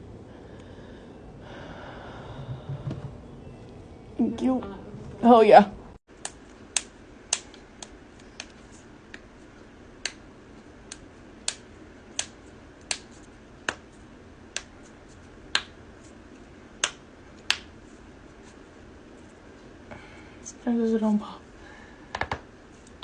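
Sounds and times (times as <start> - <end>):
faint room hiss: 0.0 - 23.0.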